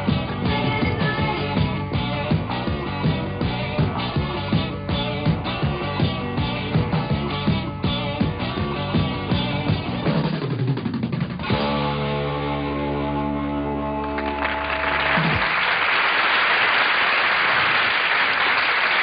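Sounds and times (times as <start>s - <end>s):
audience applauding: 14.0s - 19.0s.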